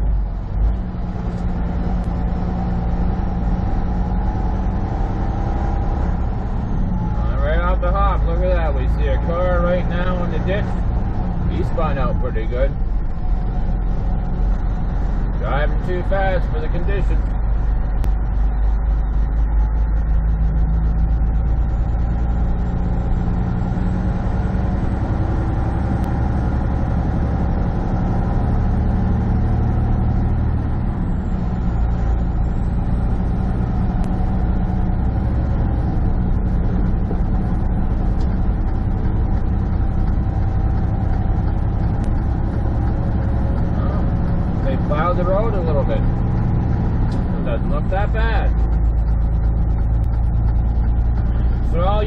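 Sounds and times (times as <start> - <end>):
road noise: 0.0 - 52.0
truck diesel engine running: 0.0 - 52.0.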